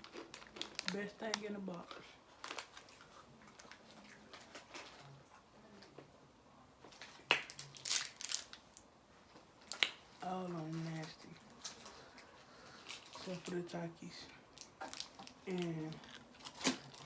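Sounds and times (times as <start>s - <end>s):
chips crunching and crinkling: 0.0s - 5.1s, 6.9s - 8.8s, 14.5s - 17.0s.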